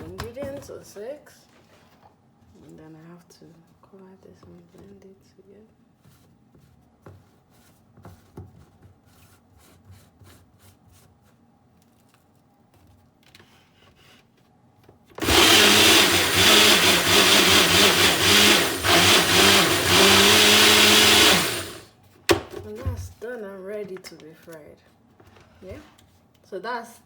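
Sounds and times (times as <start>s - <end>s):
blender motor running: 15.2s - 21.9s.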